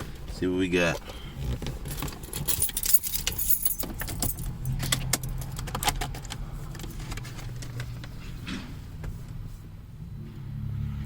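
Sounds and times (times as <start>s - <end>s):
car keys jangling: 1.0s - 8.2s.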